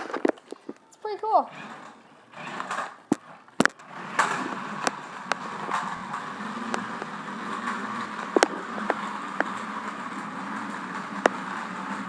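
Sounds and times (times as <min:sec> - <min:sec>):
toy car motor and wheels: 0:00.0 - 0:12.0
plastic clicks and knocks: 0:02.6 - 0:05.9.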